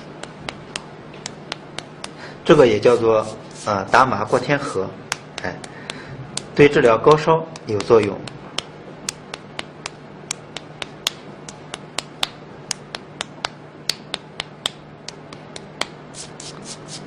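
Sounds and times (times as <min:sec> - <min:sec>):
fingertips tapping on skin: 0:00.1 - 0:02.2, 0:05.1 - 0:06.6, 0:07.5 - 0:17.0.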